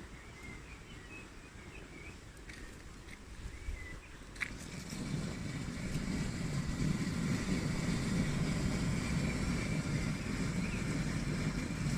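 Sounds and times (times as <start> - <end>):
steady low rumble: 3.4 - 11.9.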